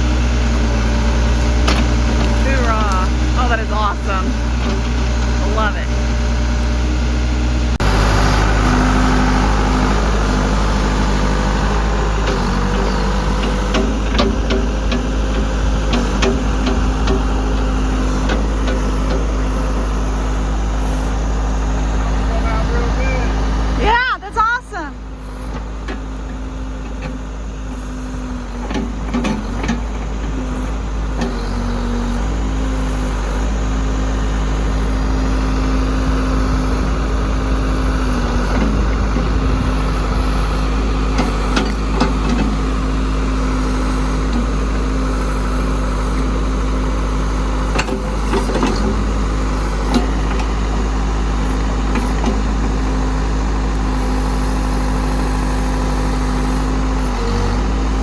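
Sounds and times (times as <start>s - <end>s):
backhoe engine running: 0.0s - 58.0s
clanks and knocks: 13.4s - 19.8s.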